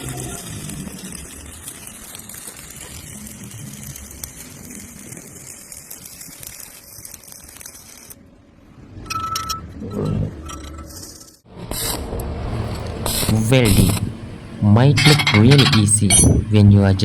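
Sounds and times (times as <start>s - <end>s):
welding arc crackling hiss: 0.0s - 8.2s, 11.7s - 16.4s
metallic knocks and clanks: 15.0s - 16.4s.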